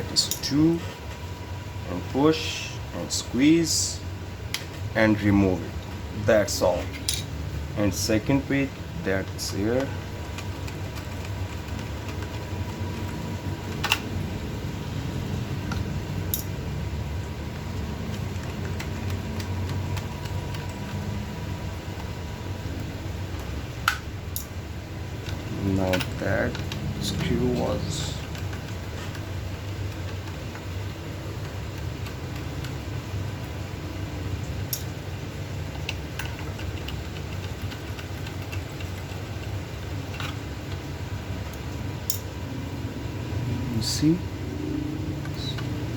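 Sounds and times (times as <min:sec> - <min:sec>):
fan humming: 0:00.0 - 0:45.9
small tools clicking and tapping: 0:25.2 - 0:29.3.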